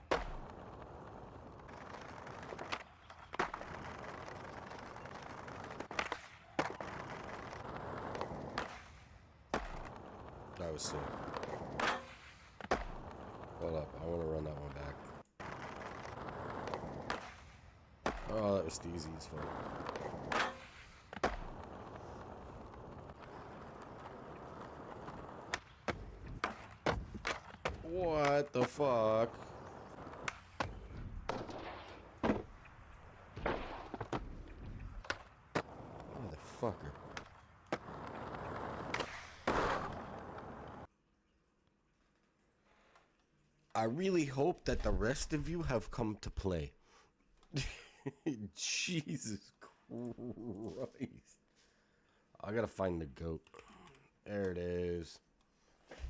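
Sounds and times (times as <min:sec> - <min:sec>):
skateboard popping and landing: 0:00.0 - 0:14.0, 0:14.6 - 0:40.9
skateboard wheels rolling on concrete: 0:00.0 - 0:49.2, 0:49.8 - 0:56.0.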